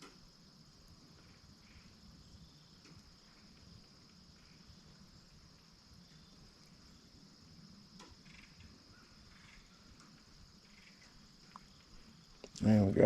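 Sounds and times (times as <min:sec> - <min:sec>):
crickets chirring: 0:00.0 - 0:13.0
faint click: 0:08.0 - 0:08.2.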